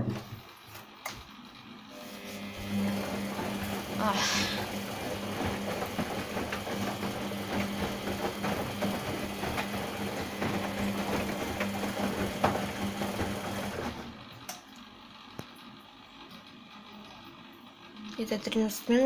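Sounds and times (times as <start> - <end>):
washing machine motor hum: 0.0 - 19.0
knocks of tumbling laundry: 2.7 - 14.2.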